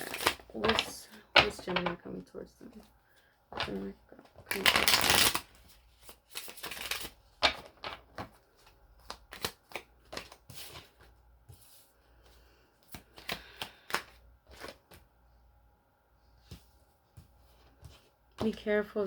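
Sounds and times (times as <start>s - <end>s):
cards snapping and slapping: 4.5s - 5.5s, 6.3s - 8.3s, 9.0s - 10.8s, 12.9s - 14.9s.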